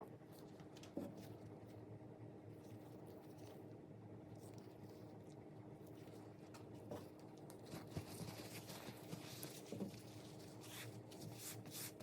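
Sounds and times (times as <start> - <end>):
faint scratching and handling: 2.5 - 12.0.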